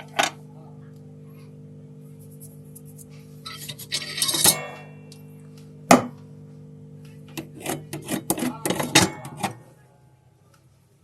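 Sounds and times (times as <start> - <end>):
metal tools clinking and rattling: 3.5 - 4.6.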